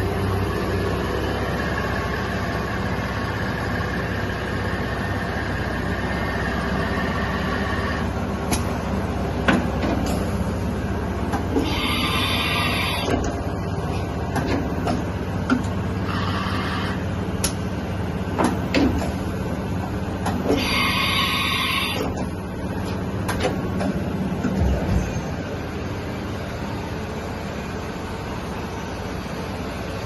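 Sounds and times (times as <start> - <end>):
machine humming: 0.0 - 30.0
machine clunks and clicks: 9.4 - 10.3, 14.3 - 15.8, 18.4 - 19.2, 22.0 - 25.0.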